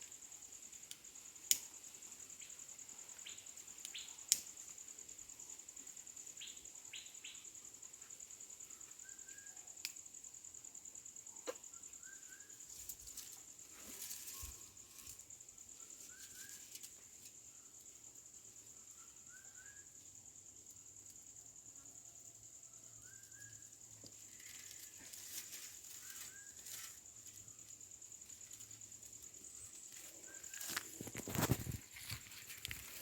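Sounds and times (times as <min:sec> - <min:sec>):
insects trilling: 0:00.0 - 0:33.0
faint bird chirps: 0:06.3 - 0:07.6, 0:08.6 - 0:09.9, 0:11.2 - 0:16.9, 0:18.6 - 0:20.2, 0:21.9 - 0:27.6.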